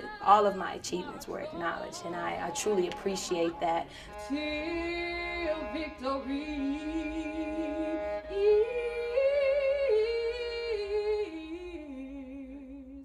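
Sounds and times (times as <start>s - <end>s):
voices singing a cappella: 0.0s - 4.8s.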